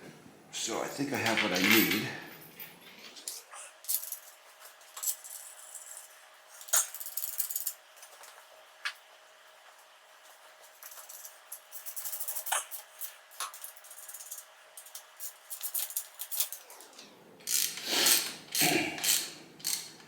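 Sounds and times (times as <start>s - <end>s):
faint steady hum: 0.0s - 20.0s
tools scraping and clattering: 1.1s - 8.3s
small metal parts rattling: 1.2s - 3.2s, 3.8s - 7.8s, 10.8s - 20.0s.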